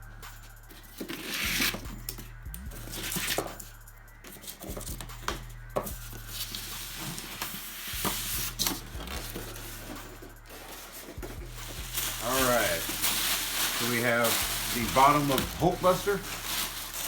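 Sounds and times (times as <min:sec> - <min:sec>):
packing material rustling: 0:06.2 - 0:17.0.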